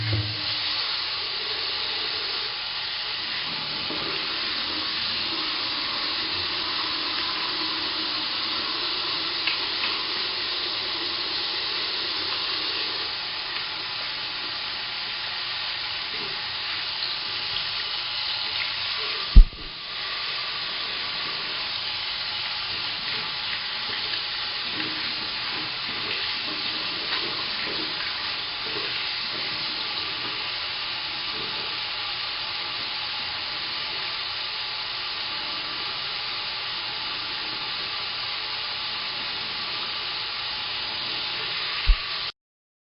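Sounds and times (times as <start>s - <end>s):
sharp loud thump: 0.0s - 0.5s, 19.4s - 19.7s
faucet water hissing: 0.0s - 42.3s.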